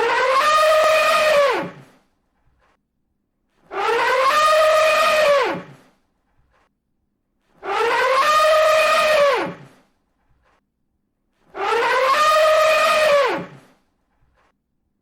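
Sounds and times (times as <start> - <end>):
elephant trumpeting: 0.0 - 1.9, 3.7 - 5.8, 7.6 - 9.8, 11.5 - 13.7.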